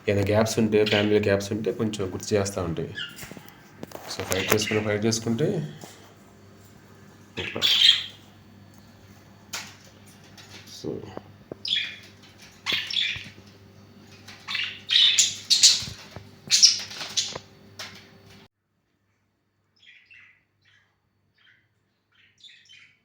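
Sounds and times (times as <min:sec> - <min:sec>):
lovebirds squawking: 0:00.4 - 0:18.4.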